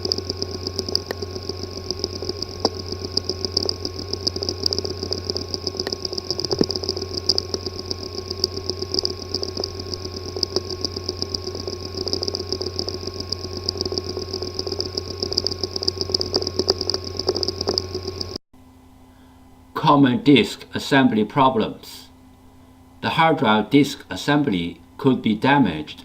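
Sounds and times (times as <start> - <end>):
hard drive ticking: 0.0 - 18.4
hard drive hum and whine: 0.0 - 26.0.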